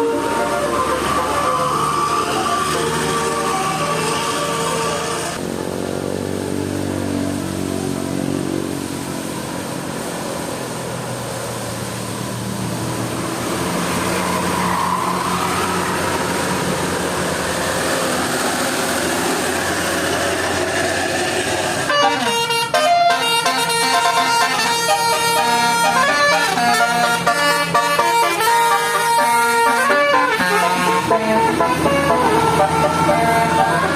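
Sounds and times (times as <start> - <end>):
multi-tone horn playing a tune: 0.0 - 5.4, 21.8 - 33.9
bus diesel engine under load: 0.0 - 33.9.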